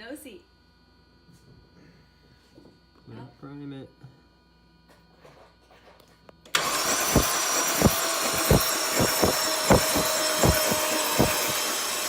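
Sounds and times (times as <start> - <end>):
starter motor cranking engine: 6.6 - 11.6.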